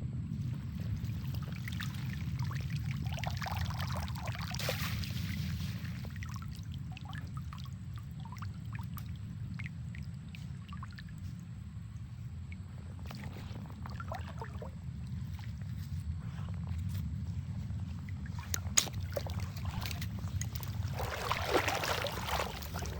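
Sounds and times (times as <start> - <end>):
low rumble: 0.0 - 4.5, 5.2 - 22.9
water pouring and splashing: 0.5 - 11.4, 17.9 - 22.9
water dripping: 18.0 - 22.9.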